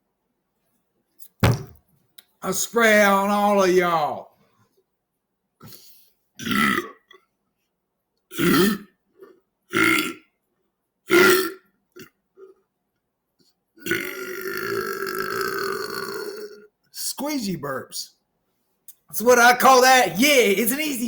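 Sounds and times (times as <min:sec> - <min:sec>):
man burping: 0:06.4 - 0:07.2, 0:08.3 - 0:08.9, 0:11.1 - 0:12.1, 0:13.8 - 0:16.7.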